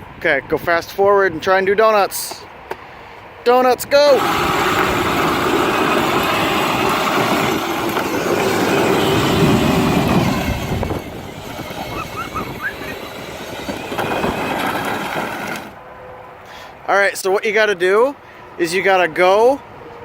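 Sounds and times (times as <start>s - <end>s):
electric toy car motors whirring: 4.1s - 15.8s
plastic wheels spinning and slipping: 4.1s - 15.8s.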